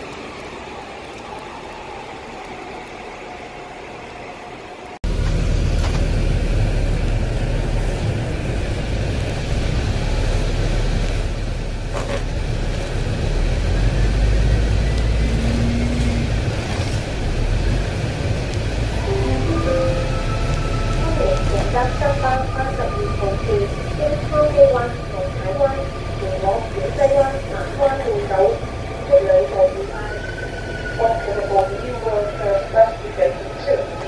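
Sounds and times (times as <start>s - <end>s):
bus engine rumble: 0.0s - 34.0s
road noise: 0.0s - 34.0s
brief higher tones: 19.0s - 21.4s.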